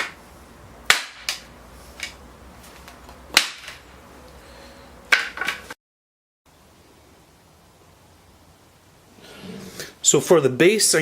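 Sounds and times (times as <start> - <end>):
wooden parts knocking together: 5.1 - 5.7.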